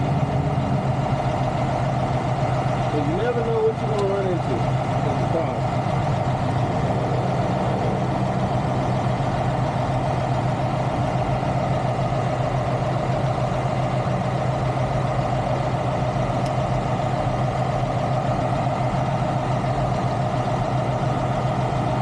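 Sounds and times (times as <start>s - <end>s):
diesel truck engine idling: 0.0s - 22.0s.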